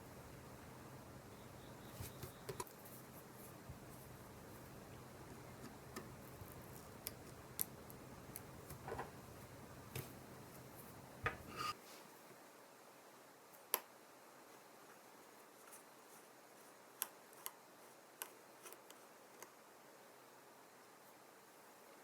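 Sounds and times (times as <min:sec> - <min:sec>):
faint low hum: 0:00.0 - 0:13.2.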